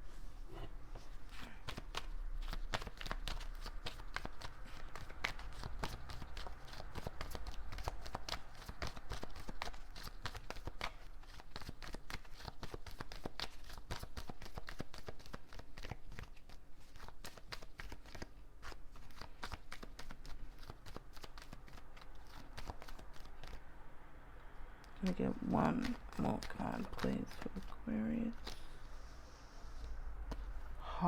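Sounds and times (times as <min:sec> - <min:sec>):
cards being shuffled: 0:01.0 - 0:23.6, 0:25.7 - 0:28.8.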